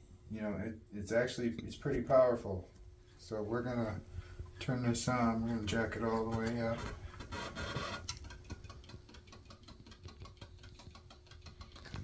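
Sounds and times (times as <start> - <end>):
faint steady hum: 0.0 - 12.0
motor rapid clicking: 6.8 - 12.0.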